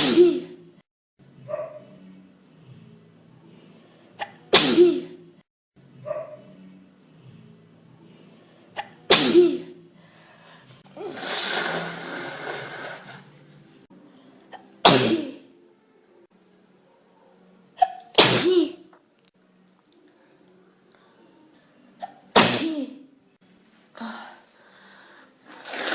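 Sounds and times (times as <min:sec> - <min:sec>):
person sneezing: 0:00.0 - 0:00.6, 0:04.2 - 0:05.2, 0:08.8 - 0:09.8, 0:11.0 - 0:13.2, 0:14.5 - 0:15.4, 0:17.8 - 0:18.8, 0:22.0 - 0:23.0
breath intake: 0:10.1 - 0:13.3, 0:24.0 - 0:25.9.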